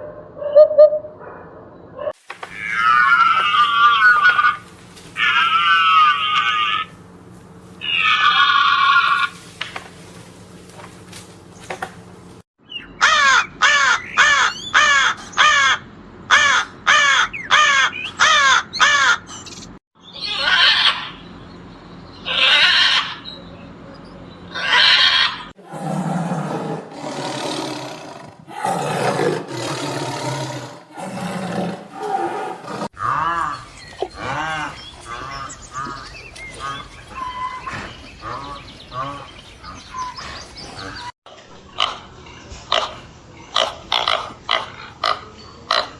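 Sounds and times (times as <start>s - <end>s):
harsh animal calls: 2.4s - 9.9s, 20.2s - 21.4s, 22.2s - 23.4s, 24.5s - 45.9s
rough animal sounds: 2.4s - 12.2s, 24.5s - 45.9s
soft pitched animal calls: 2.5s - 7.0s, 7.8s - 9.5s, 32.9s - 41.1s
short animal calls: 32.9s - 41.1s.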